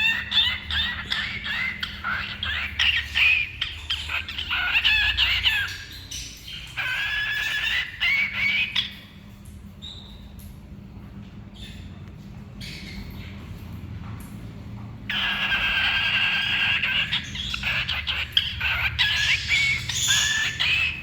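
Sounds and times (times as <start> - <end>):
parrots chirping and squawking: 0.0 - 10.0, 15.0 - 21.0.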